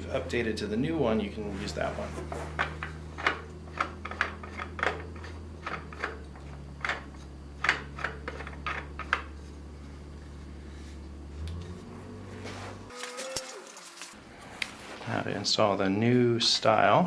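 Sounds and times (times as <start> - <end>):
low background hum: 0.0 - 17.0
plastic parts clicking and knocking: 2.6 - 9.4.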